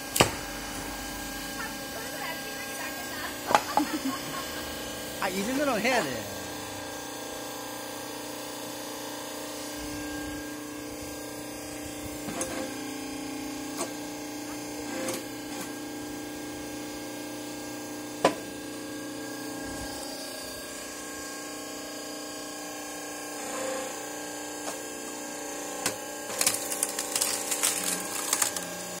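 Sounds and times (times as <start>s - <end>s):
log splitter motor and pump hum: 0.0s - 29.0s
wood cracking: 26.3s - 28.8s
wood crackling and splintering: 26.3s - 29.0s.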